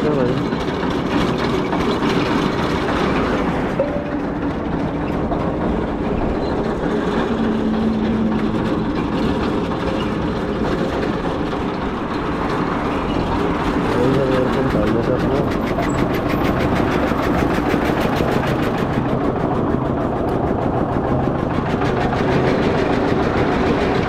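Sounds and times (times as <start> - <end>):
motorcycle engine running: 0.0 - 24.0
wind and road noise: 0.0 - 24.0.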